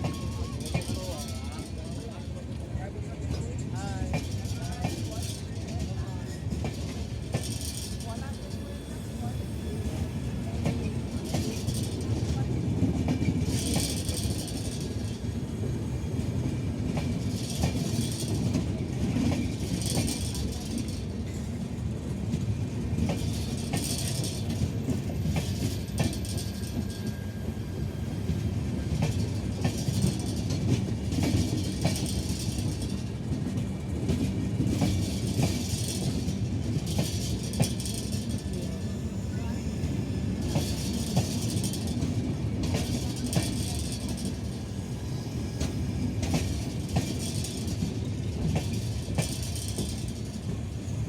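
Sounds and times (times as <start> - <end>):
train coach rumble: 0.0 - 51.0
wheels clacking over rail joints: 28.8 - 38.7, 40.4 - 44.8, 45.6 - 50.7.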